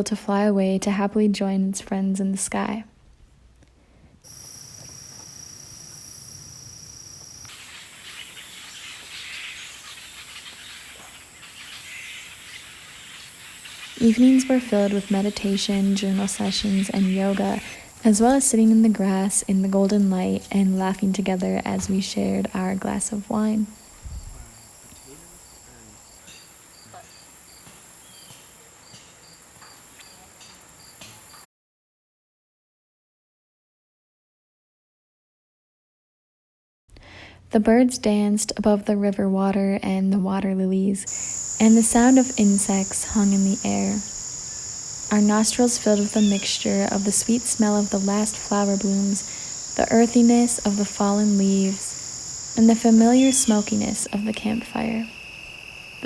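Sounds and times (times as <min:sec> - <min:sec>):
crickets chirping: 0:04.3 - 0:31.5, 0:41.1 - 0:56.0
high-pitched insect trill: 0:04.3 - 0:31.5, 0:41.1 - 0:56.0
insect chorus: 0:04.3 - 0:31.5, 0:41.1 - 0:56.0.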